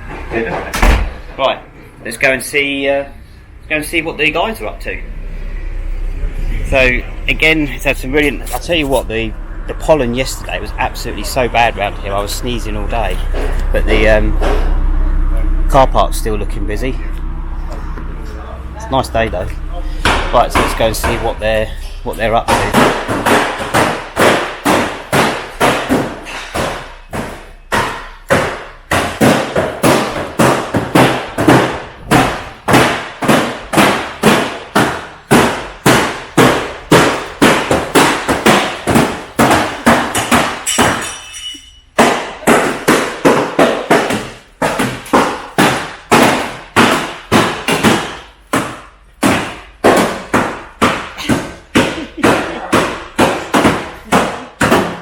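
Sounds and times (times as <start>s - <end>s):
hammer on steel bodywork: 20.0s - 55.0s.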